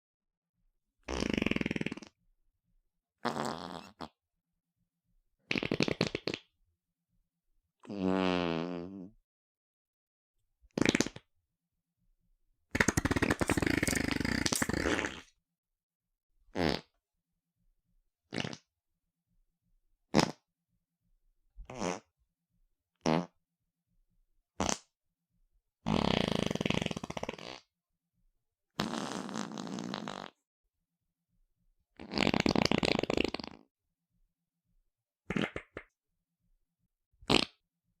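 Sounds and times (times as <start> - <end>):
fart sounds: 1.0 - 2.2, 3.2 - 4.2, 5.4 - 6.5, 7.8 - 9.2, 10.7 - 11.3, 12.7 - 15.4, 16.5 - 17.0, 18.3 - 18.7, 20.1 - 20.5, 21.6 - 22.2, 23.0 - 23.4, 24.6 - 24.9, 25.8 - 27.7, 28.8 - 30.4, 32.0 - 33.7, 35.2 - 36.0, 37.2 - 37.6.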